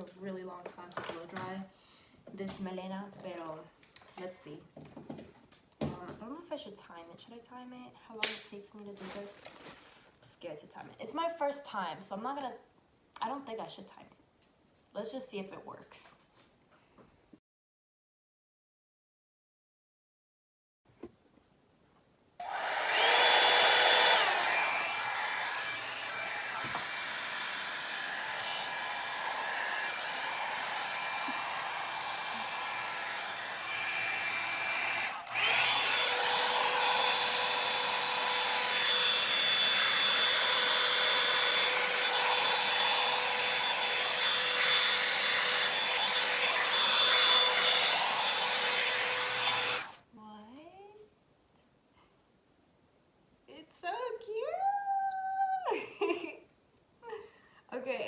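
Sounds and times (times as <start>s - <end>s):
hair dryer running: 22.4s - 50.0s.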